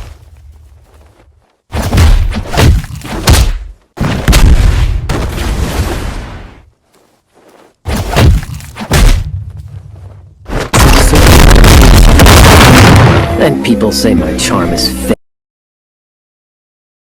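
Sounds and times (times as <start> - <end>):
bass-heavy booming bursts: 10.8 - 13.4.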